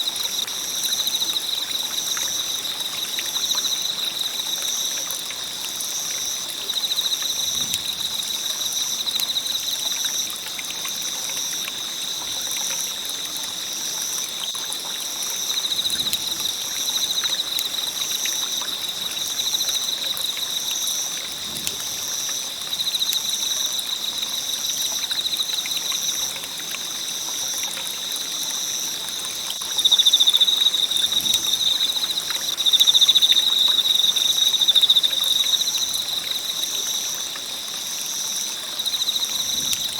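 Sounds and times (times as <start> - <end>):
insect trill: 0.0 - 39.9
insect pulsing call: 27.2 - 37.2.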